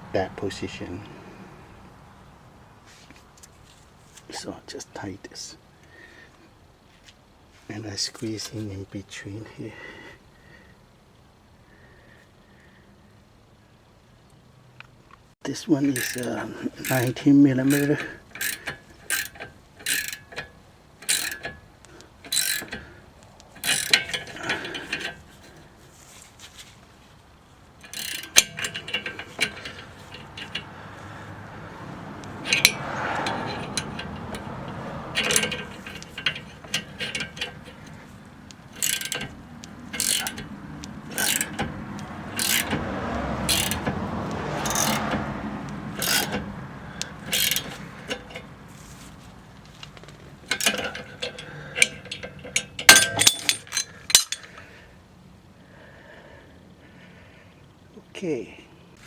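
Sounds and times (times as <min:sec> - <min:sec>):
ratchet wrench clicking: 0:15.9 - 0:25.6, 0:27.8 - 0:48.6, 0:49.7 - 0:54.6
sharp clicks and knocks: 0:16.0 - 0:25.6, 0:27.8 - 0:54.6.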